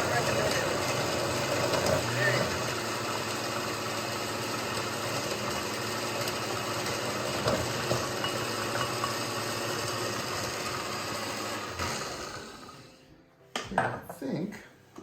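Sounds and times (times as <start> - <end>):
blender motor running: 0.0 - 13.0.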